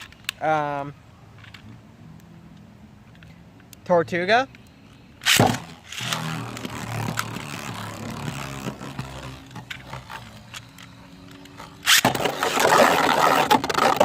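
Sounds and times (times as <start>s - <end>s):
low hum of steady tones: 0.0s - 12.4s
spinning tops scraping and rattling: 5.2s - 14.0s.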